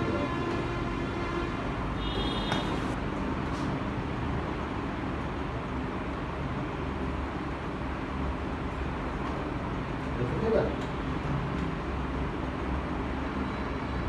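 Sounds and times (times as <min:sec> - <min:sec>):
car horn: 0:00.0 - 0:03.0
road traffic noise: 0:00.0 - 0:14.0.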